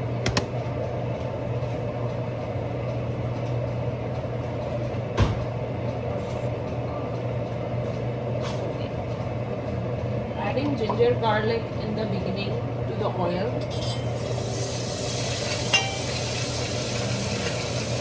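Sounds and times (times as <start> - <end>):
sharp knock: 0.2 - 0.5
onions frying in hot oil: 14.0 - 18.0.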